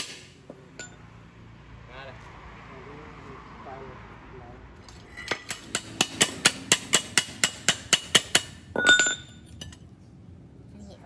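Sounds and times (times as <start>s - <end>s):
loud ringing metal clank: 5.1s - 9.8s
hammer tapping on metal: 5.2s - 9.8s.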